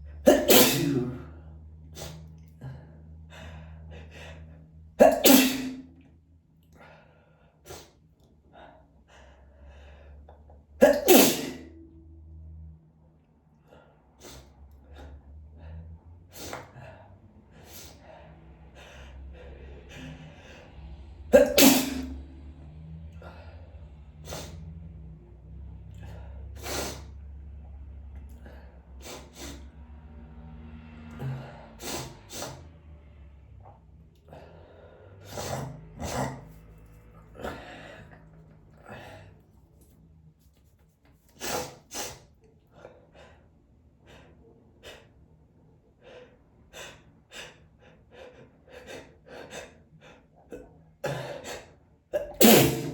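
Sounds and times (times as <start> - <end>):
low steady hum: 0.0 - 41.4
person sneezing: 0.3 - 1.4, 5.0 - 6.0, 10.8 - 12.0, 21.3 - 22.3, 51.0 - 52.9
gasping breaths: 1.2 - 5.0
person sniffing and gasping: 21.4 - 22.3, 41.4 - 42.2, 51.1 - 52.9.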